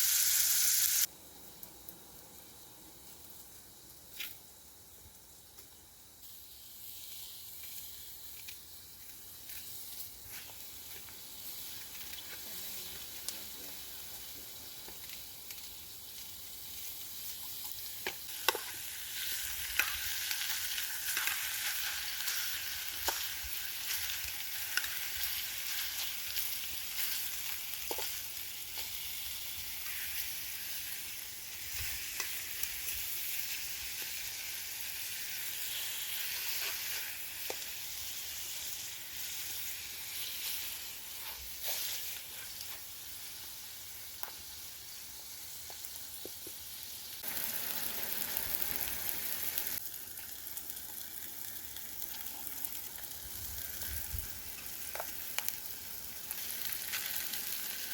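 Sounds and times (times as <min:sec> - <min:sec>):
food sizzling over fire: 0:00.0 - 0:57.9.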